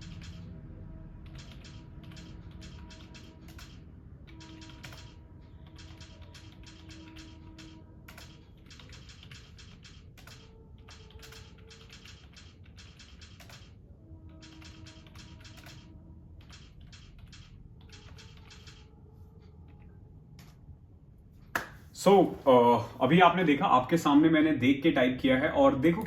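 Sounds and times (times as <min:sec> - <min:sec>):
keyboard typing: 0:00.0 - 0:20.6.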